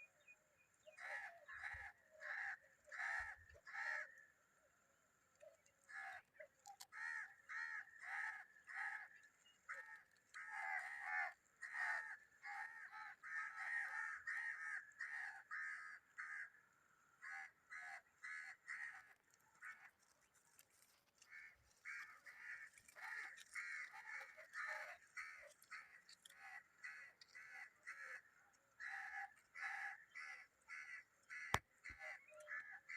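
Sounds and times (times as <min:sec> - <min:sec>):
birds calling: 0:21.1 - 0:32.9.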